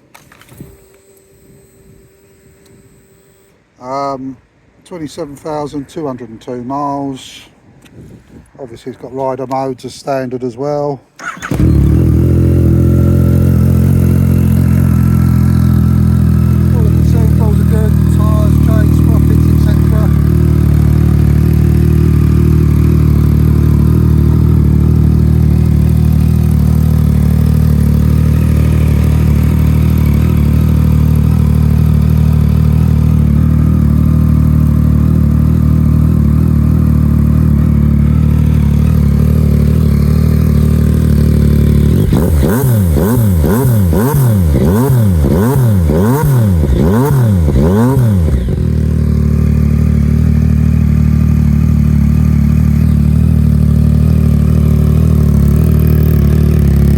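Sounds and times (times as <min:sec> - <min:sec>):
engine revving blips: 0:11.2 - 0:48.9
motorcycle engine idling: 0:11.2 - 0:56.9.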